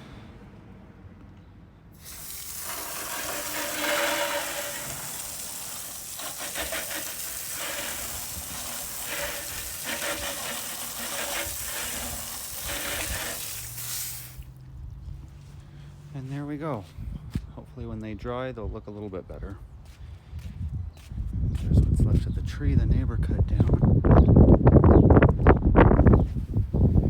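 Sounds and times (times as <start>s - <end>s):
water spraying from hose nozzle: 2.0s - 14.5s.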